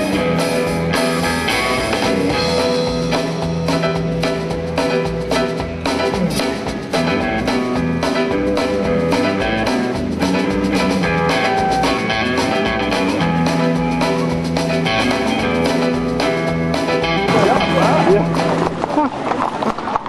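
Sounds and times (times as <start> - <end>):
drum kit beat: 0.0 - 18.8
guitar band music: 0.0 - 19.4.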